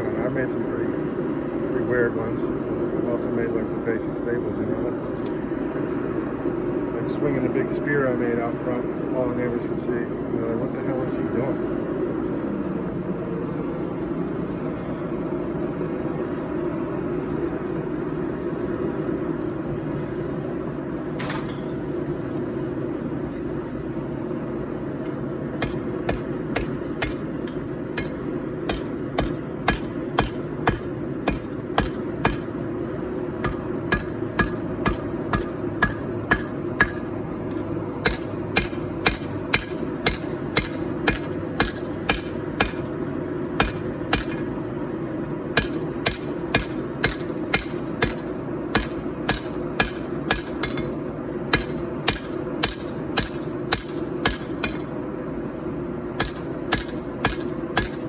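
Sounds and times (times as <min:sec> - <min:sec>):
hammer striking steel on anvil: 0:21.2 - 0:21.8, 0:25.6 - 0:32.6, 0:33.4 - 0:43.0, 0:43.6 - 0:44.5, 0:45.6 - 0:55.0, 0:56.2 - 0:58.0.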